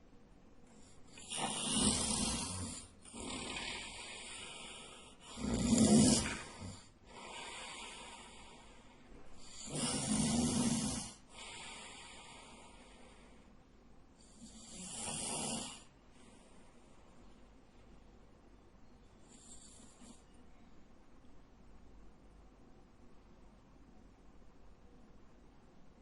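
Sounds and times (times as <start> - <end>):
man snoring loudly: 1.1 - 8.6, 9.4 - 12.7, 14.3 - 15.9
soft long breath: 6.2 - 9.5, 11.1 - 13.6.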